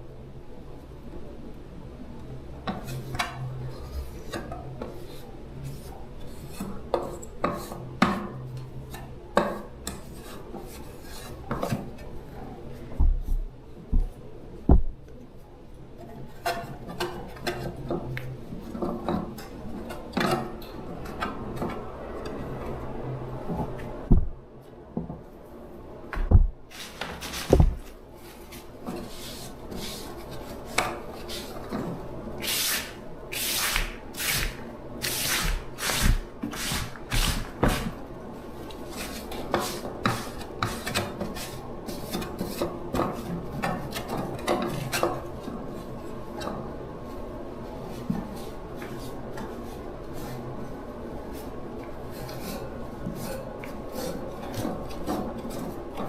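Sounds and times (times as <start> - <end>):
faint steady hum: 0.0 - 56.0
scraping and rubbing strokes: 26.7 - 31.8, 32.4 - 37.9.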